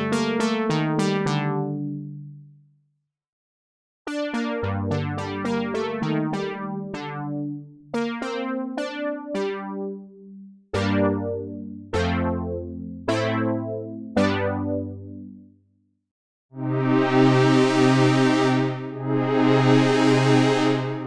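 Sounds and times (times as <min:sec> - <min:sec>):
synth bass notes: 0:00.0 - 0:02.1, 0:04.2 - 0:15.4, 0:16.7 - 0:21.0
synth chords: 0:00.0 - 0:02.1, 0:04.1 - 0:15.4, 0:16.7 - 0:21.0
electric piano-like synth notes: 0:04.1 - 0:10.1, 0:10.8 - 0:15.4.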